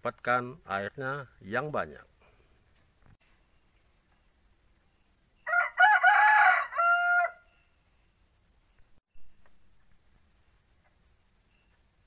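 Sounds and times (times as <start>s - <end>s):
insects chirring: 0.0s - 12.0s
rooster crowing: 5.4s - 7.6s.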